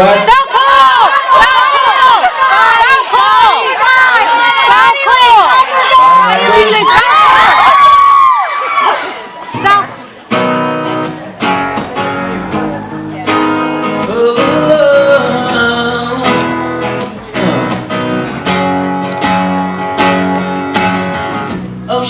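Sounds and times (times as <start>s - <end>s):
acoustic guitar strumming chords: 9.6s - 22.0s.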